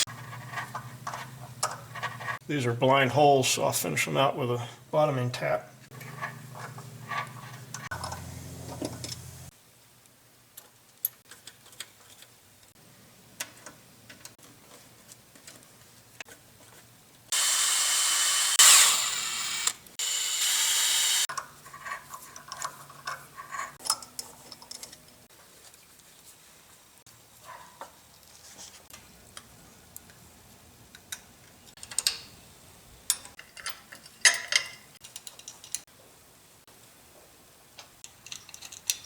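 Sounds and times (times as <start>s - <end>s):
power tool running: 17.3s - 21.3s.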